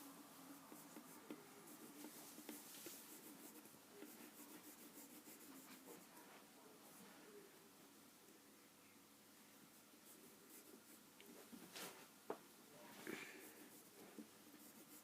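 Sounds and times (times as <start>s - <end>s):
pencil scratching on paper: 0.5s - 6.2s, 10.0s - 11.0s, 13.3s - 15.0s.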